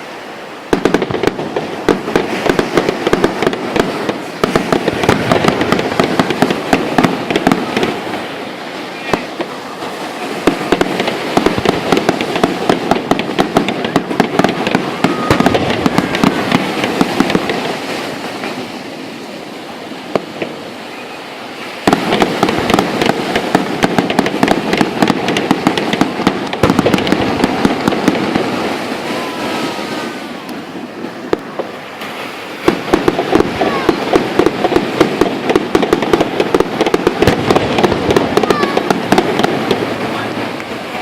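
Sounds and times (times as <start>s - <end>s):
fireworks crackling and popping: 0.0s - 41.0s
faint firework whistle: 13.6s - 18.7s, 20.8s - 22.9s, 28.8s - 34.2s.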